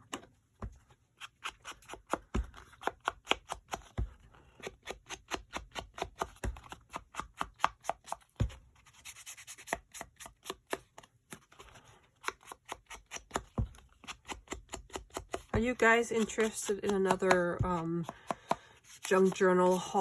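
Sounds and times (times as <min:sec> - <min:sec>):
scissors snipping paper: 0:01.2 - 0:08.3, 0:08.9 - 0:20.0.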